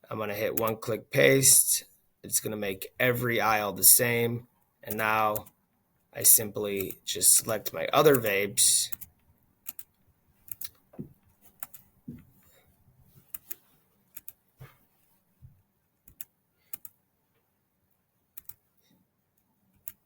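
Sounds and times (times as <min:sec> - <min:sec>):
computer mouse and keyboard clicks: 0:08.9 - 0:10.8, 0:11.4 - 0:11.9, 0:13.2 - 0:14.4, 0:16.0 - 0:17.0, 0:18.4 - 0:18.7, 0:19.8 - 0:20.0.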